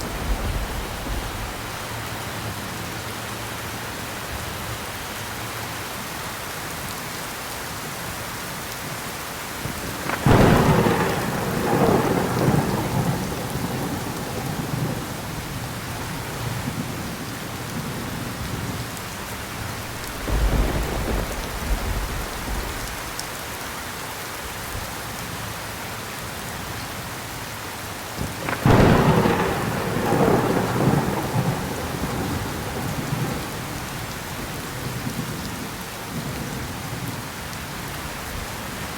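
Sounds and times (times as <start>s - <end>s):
thunder cracking and rumbling: 0.0s - 1.9s, 9.9s - 18.8s, 19.7s - 23.4s, 28.2s - 37.1s
heavy rain falling: 0.0s - 38.9s.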